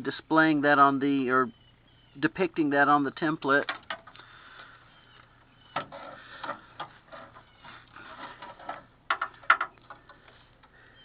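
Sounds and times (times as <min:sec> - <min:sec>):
handling noises with rustling: 0:05.2 - 0:10.8
light clicks and knocks: 0:05.7 - 0:10.8.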